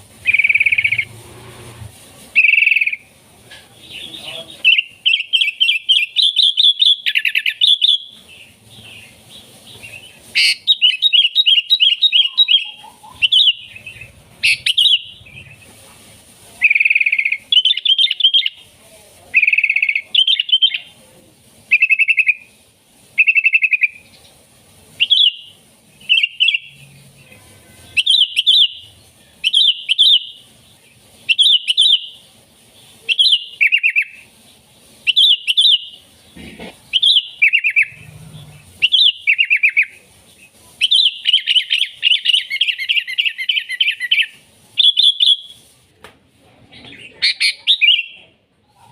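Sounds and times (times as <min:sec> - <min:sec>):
bird singing bubbly phrases: 0:00.2 - 0:01.1, 0:10.0 - 0:15.5, 0:36.9 - 0:39.9.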